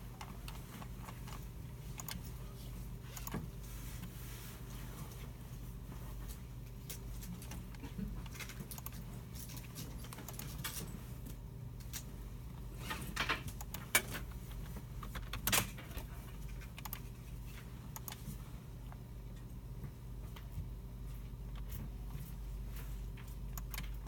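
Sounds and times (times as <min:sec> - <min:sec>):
steady low hum: 0:00.0 - 0:24.0
mouse clicks: 0:02.0 - 0:02.2.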